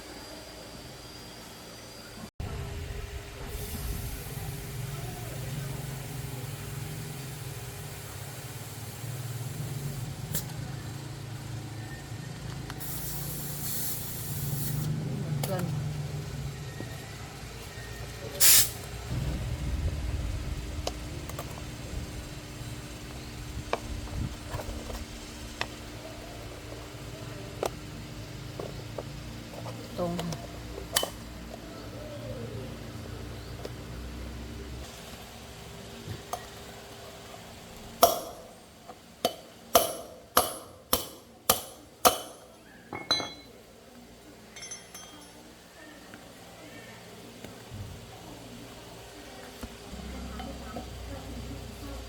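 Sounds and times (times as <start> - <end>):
short loud hiss: 18.4 - 18.8
steady low hum: 18.7 - 34.9
hammer striking metal: 39.2 - 43.5.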